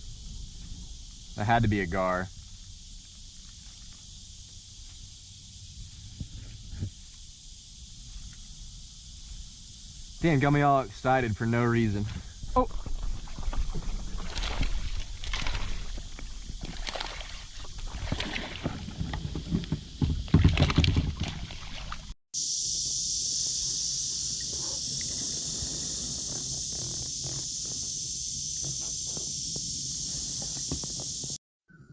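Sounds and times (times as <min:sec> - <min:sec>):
steady high-pitched hiss: 0:00.0 - 0:17.8, 0:22.4 - 0:31.9
knocks and thumps in kayak: 0:12.0 - 0:22.1.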